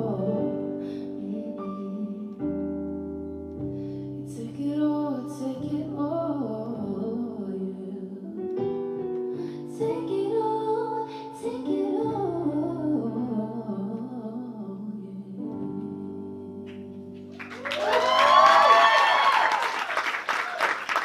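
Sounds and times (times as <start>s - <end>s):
woman singing: 0.0s - 2.6s, 4.2s - 8.4s, 9.7s - 16.4s
keyboard chords: 0.0s - 17.9s.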